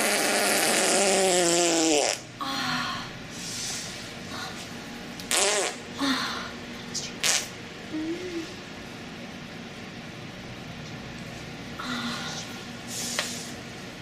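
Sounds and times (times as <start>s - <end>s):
fart sound effects: 0.0s - 2.2s, 5.3s - 5.8s, 7.2s - 7.5s.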